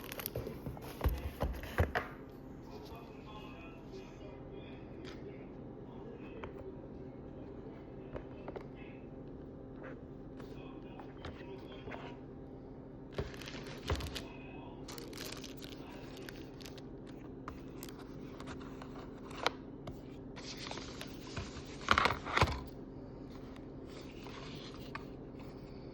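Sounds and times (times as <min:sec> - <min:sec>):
tablet packaging crinkling: 0:00.0 - 0:00.5, 0:13.2 - 0:16.8, 0:17.6 - 0:18.6
steady low hum: 0:00.0 - 0:25.9.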